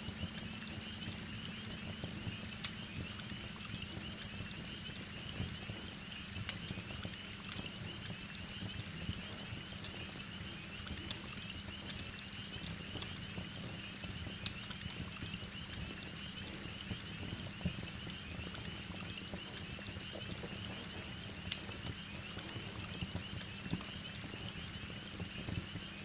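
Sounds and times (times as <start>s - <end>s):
wood fire crackling: 0.0s - 13.2s.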